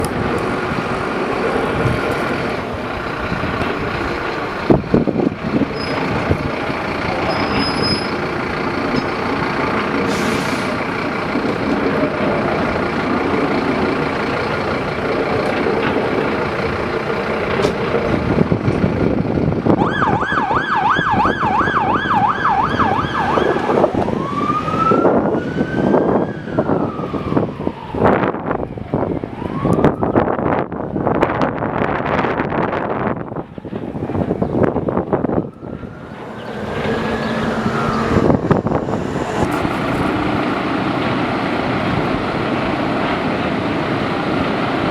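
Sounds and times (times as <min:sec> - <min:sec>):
fire truck engines running: 0:00.0 - 0:44.9
siren yelping and wailing: 0:19.7 - 0:31.6, 0:34.6 - 0:40.9.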